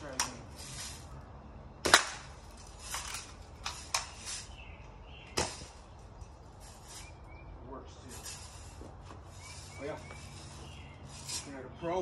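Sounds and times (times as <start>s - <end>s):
bb gun firing crack: 1.8s - 2.4s.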